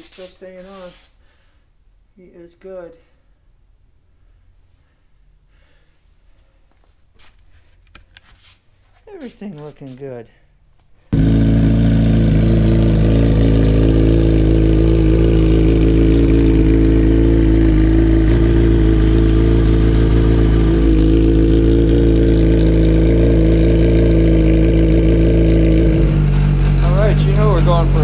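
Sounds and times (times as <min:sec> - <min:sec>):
motorcycle engine idling: 0:11.2 - 0:28.0.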